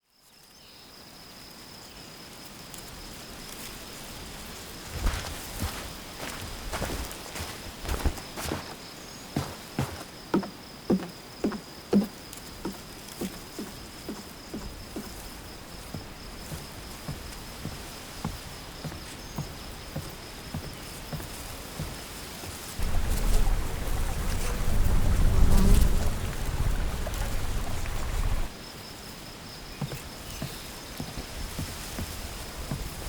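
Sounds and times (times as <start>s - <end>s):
footsteps walking: 4.7s - 11.6s, 12.7s - 24.2s
low rumbling noise: 22.8s - 28.6s.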